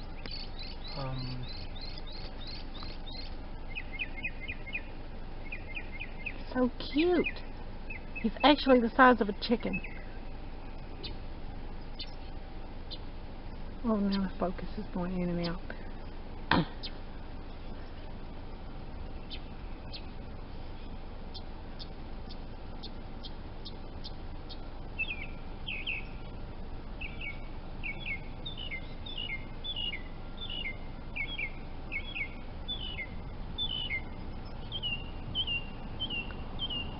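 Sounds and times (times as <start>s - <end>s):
high downward-slurred bird chirps: 0.0s - 14.4s, 15.3s - 36.9s
small bird ticking: 0.0s - 36.9s.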